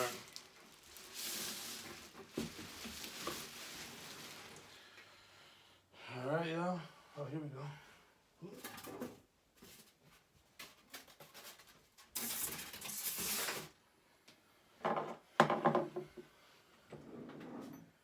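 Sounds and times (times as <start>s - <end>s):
packaging rustling: 0.0s - 4.8s.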